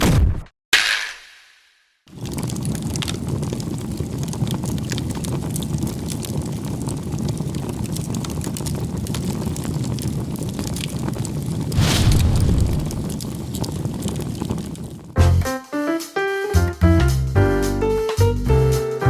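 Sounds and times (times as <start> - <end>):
wood fire crackling and popping: 2.1 - 15.2.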